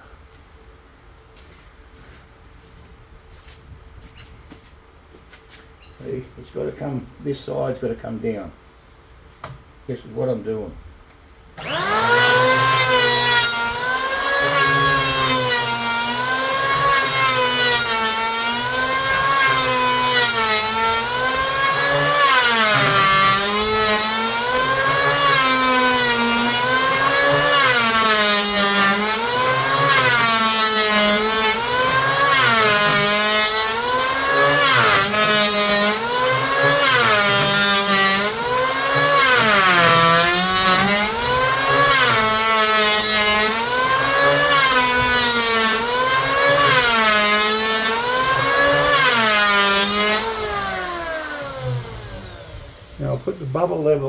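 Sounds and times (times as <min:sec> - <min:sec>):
electric planer cutting wood: 0:11.6 - 0:53.8.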